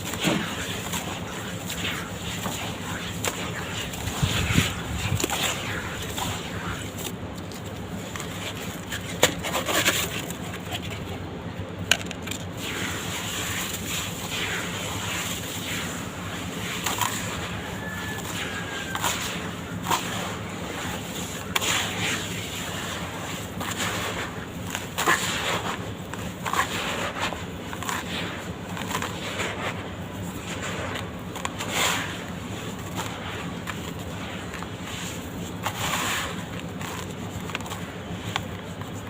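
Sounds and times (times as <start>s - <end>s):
dirt crackling and crunching: 0.0s - 39.0s.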